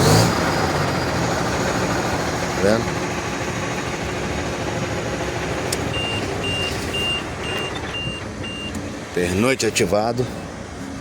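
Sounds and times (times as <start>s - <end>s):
truck diesel engine idling: 0.0s - 11.0s
high electronic beeps: 5.9s - 8.8s.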